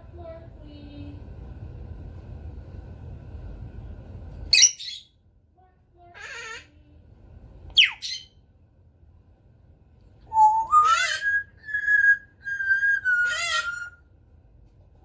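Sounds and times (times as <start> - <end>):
parrot whistling: 7.8 - 8.3, 10.3 - 14.0
parrot squawky calls: 7.8 - 8.4, 10.6 - 14.0.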